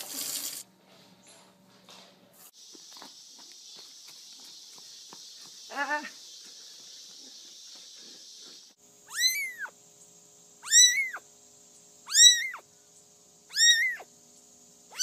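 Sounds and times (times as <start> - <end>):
cat meowing: 9.1 - 9.7, 10.6 - 11.2, 12.1 - 12.6, 13.5 - 14.1.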